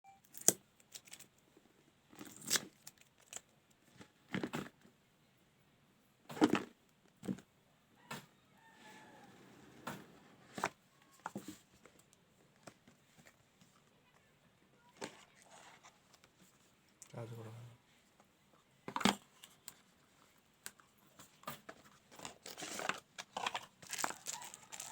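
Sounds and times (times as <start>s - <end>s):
packaging rustling and tearing: 0.3s - 1.3s, 2.1s - 3.5s, 22.1s - 24.9s.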